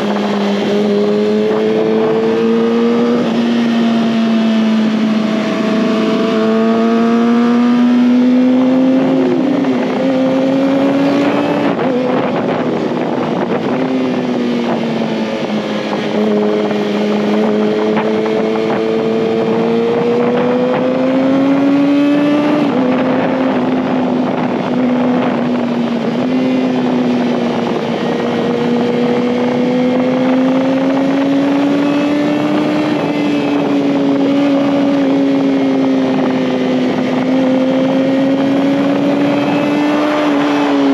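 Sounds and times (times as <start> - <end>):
motorcycle engine at high revs: 0.0 - 40.9
wind noise: 0.0 - 40.9.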